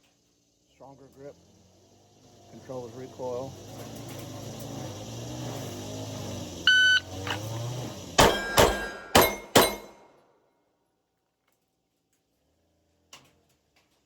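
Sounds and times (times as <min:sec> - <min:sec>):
shot timer beep: 0:06.7 - 0:07.5
pistol shots: 0:08.2 - 0:10.0.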